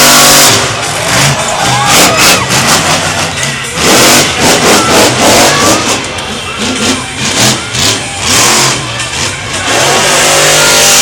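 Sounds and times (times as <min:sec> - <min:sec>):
truck engine revving hard: 0:00.0 - 0:11.0.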